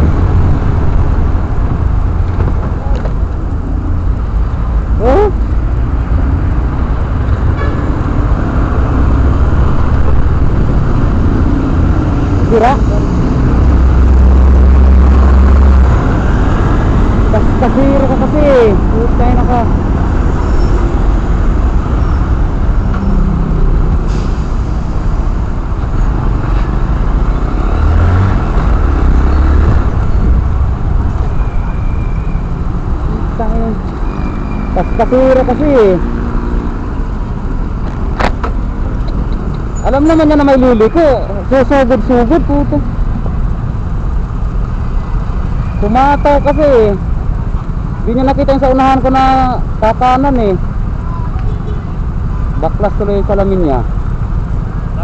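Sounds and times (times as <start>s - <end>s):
loud low rumble: 0.0s - 7.2s
wind rumble on microphone: 0.0s - 22.9s, 28.3s - 33.2s
motorcycle and traffic engines: 0.0s - 55.0s.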